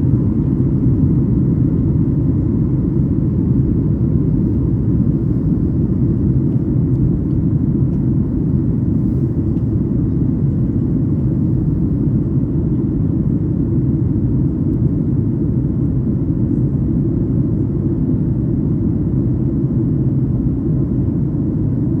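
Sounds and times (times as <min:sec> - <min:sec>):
airliner cabin engine rumble: 0:00.0 - 0:22.0.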